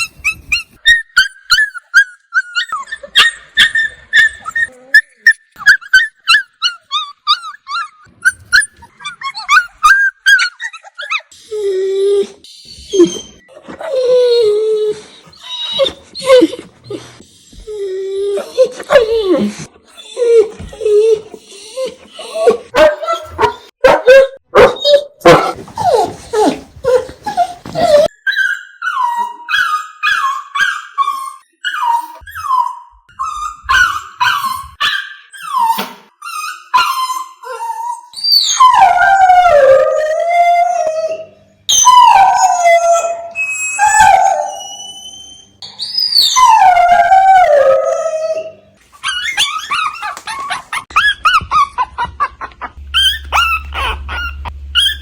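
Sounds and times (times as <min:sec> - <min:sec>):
dogs whimpering and whining: 0:00.0 - 0:55.0
dogs howling: 0:38.4 - 0:45.2, 0:46.0 - 0:51.4, 0:53.0 - 0:55.0.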